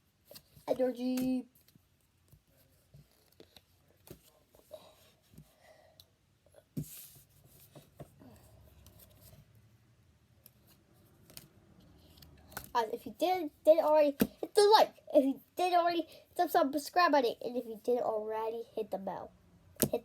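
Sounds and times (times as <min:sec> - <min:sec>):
trading cards flipped and slid: 0:10.4 - 0:12.7.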